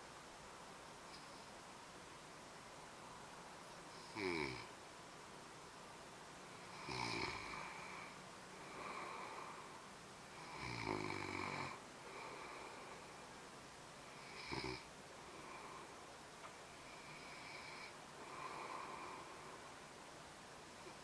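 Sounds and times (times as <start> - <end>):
quiet breaths: 0.0 - 21.0
man snoring: 4.0 - 4.7, 6.7 - 9.7, 10.3 - 13.0, 14.1 - 15.7, 16.9 - 19.4.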